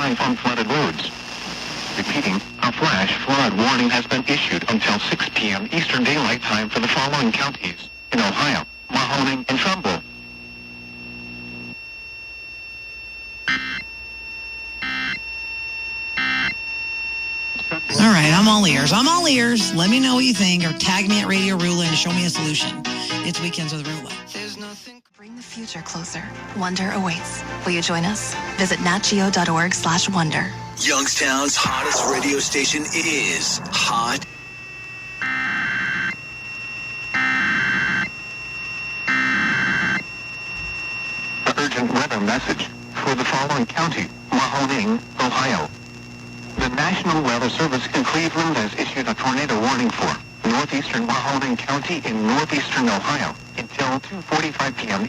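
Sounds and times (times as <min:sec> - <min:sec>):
harsh digital buzzes: 0:00.0 - 0:23.8, 0:28.2 - 0:55.0
faint steady high tone: 0:02.2 - 0:24.0, 0:28.6 - 0:45.7
low buzz: 0:07.8 - 0:21.3, 0:27.0 - 0:55.0.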